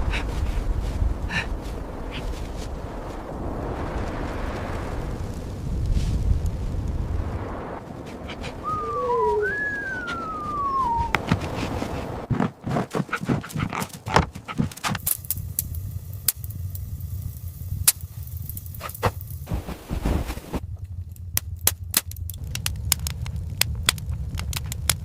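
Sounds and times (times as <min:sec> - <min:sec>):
low steady rumble: 0:00.0 - 0:12.3, 0:15.0 - 0:25.0
sharp clicks and crackles: 0:12.9 - 0:25.0.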